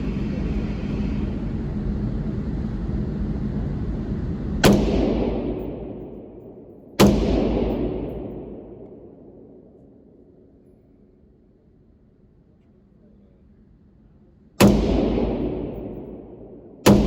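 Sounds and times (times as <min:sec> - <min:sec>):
low rumbling noise: 0:00.0 - 0:17.0
rifle shots with echo: 0:04.6 - 0:10.3, 0:14.6 - 0:17.0.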